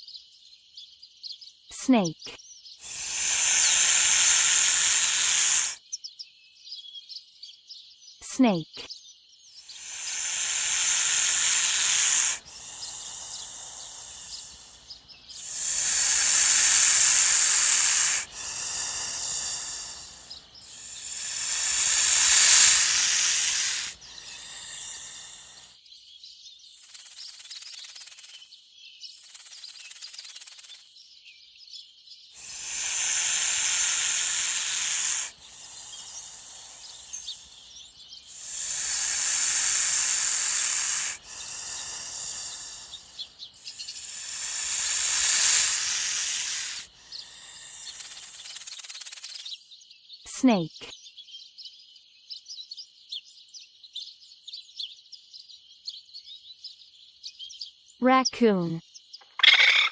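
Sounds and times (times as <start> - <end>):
snake hissing: 2.8 - 5.8, 9.6 - 25.8, 26.8 - 28.4, 32.4 - 49.6, 50.3 - 50.7.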